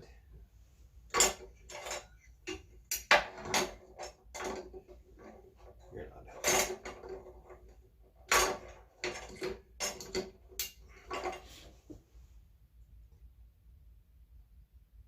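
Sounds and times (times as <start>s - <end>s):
metal clicks and clatter: 1.1s - 11.4s.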